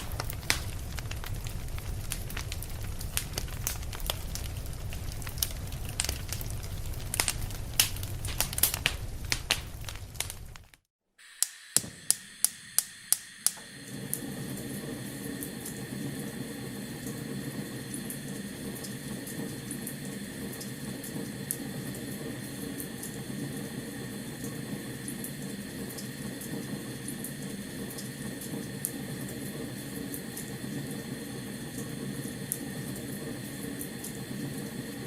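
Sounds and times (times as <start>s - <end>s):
flames rushing: 0.0s - 10.8s
fire crackling and popping: 0.0s - 23.7s.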